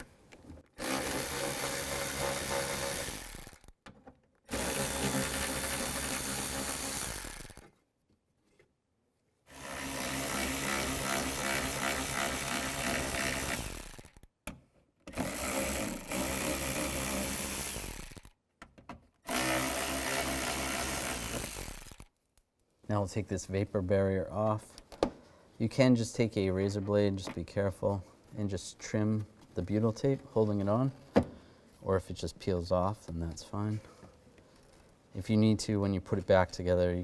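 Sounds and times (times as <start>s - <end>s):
cordless power tool motor running: 0.8s - 3.7s, 4.5s - 7.6s, 9.6s - 14.2s, 15.1s - 18.3s, 19.3s - 22.0s.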